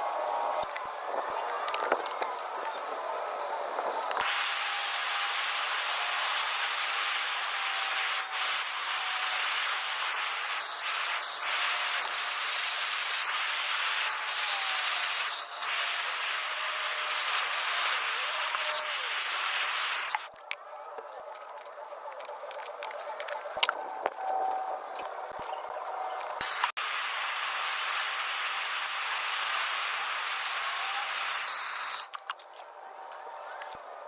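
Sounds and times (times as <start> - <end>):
gas torch flame hissing: 4.2 - 20.3, 26.4 - 32.1.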